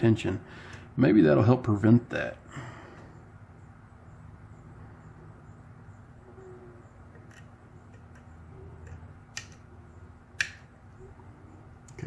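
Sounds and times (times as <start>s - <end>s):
steady low hum: 0.0s - 12.0s
low hoot-like tones: 6.0s - 7.1s.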